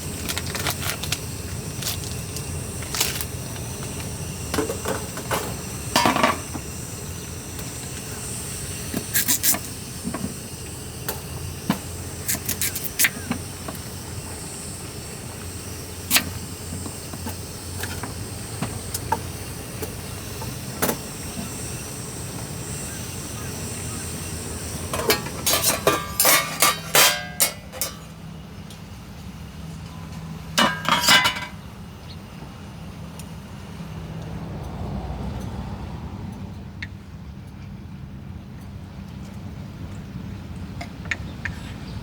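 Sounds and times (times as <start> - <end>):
low outdoor background noise: 0.0 - 42.0
small objects clicking and knocking: 12.3 - 13.2.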